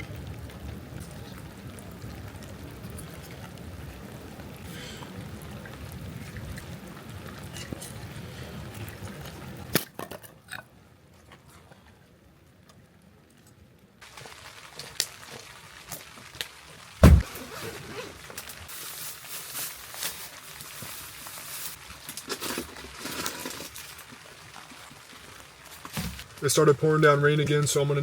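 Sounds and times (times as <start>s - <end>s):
rain falling: 0.0s - 9.7s, 14.0s - 28.0s
loud thump: 17.0s - 17.3s
sharp knocks: 17.0s - 17.3s.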